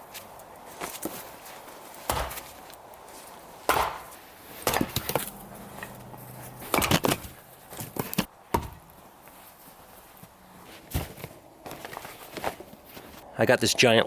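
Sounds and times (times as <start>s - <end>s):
sharp irregular knocks and crunches: 0.1s - 9.0s.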